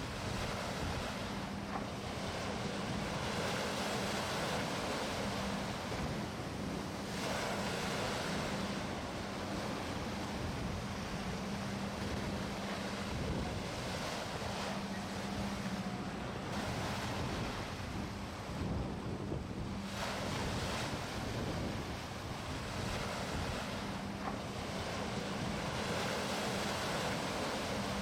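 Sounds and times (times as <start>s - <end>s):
wind on microphone: 0.0s - 1.4s, 10.0s - 28.0s
sea surf washing on shore: 0.0s - 28.0s.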